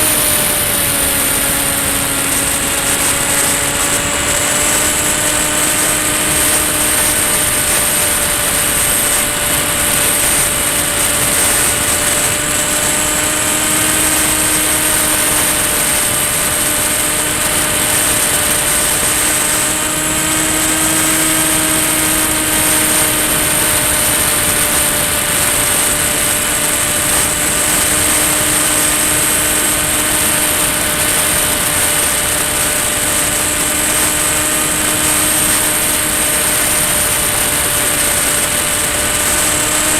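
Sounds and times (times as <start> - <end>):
electric motor whine: 0.0 - 39.9.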